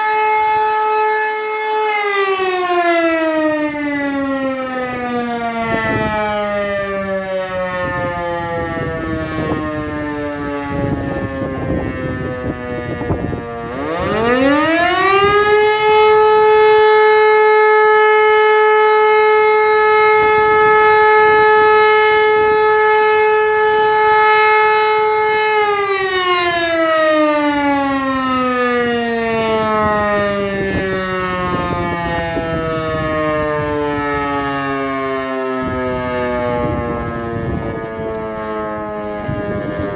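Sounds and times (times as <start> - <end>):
rotary siren wailing: 0.0 - 39.9.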